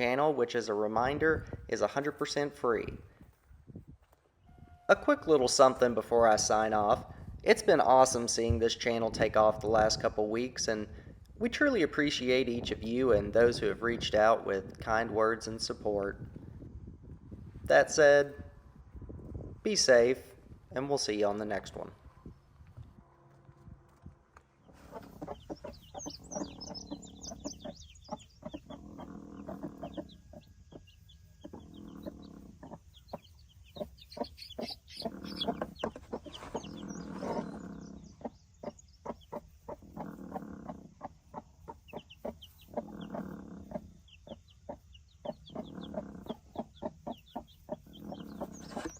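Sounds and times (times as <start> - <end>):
chickens clucking: 24.7 - 48.9.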